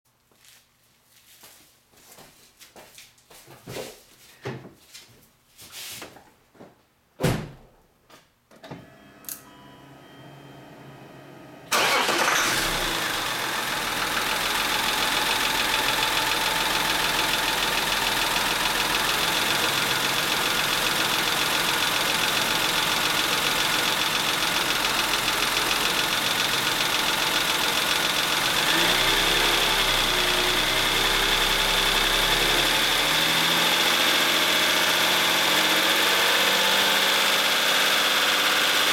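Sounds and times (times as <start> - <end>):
car engine starting and idling: 8.6 - 38.9.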